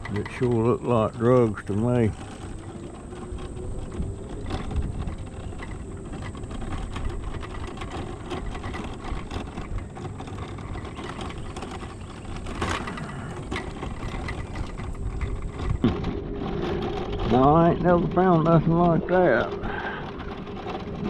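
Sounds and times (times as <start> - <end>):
road rumble: 0.0 - 21.0
small rattles and clicks: 0.0 - 21.0
vehicle engine: 0.0 - 21.0.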